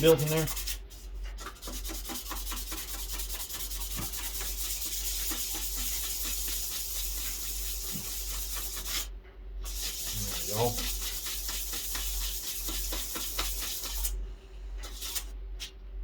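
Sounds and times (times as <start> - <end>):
rubbing on metal valve part: 9.7 - 14.1.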